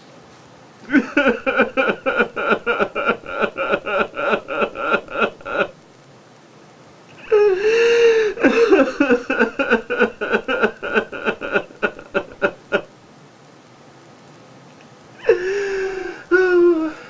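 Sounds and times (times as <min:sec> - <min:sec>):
man sobbing and wailing: 0:00.9 - 0:05.8, 0:07.2 - 0:12.9, 0:15.2 - 0:17.0.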